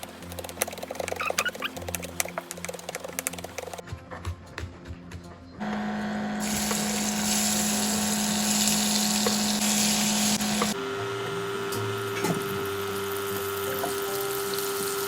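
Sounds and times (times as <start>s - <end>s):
small electric motor humming: 6.4s - 15.0s.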